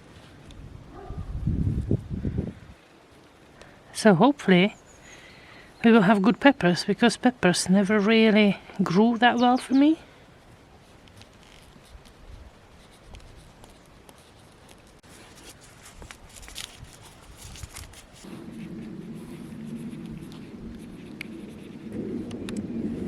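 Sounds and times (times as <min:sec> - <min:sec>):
hands scratching soil: 0:10.4 - 0:22.7
low rumbling: 0:15.4 - 0:23.0.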